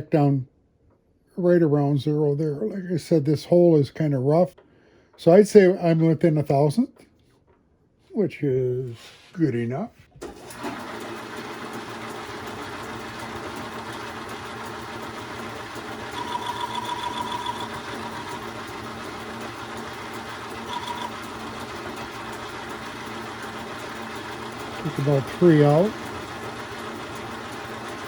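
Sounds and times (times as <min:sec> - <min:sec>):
lathe humming: 0:10.2 - 0:28.0.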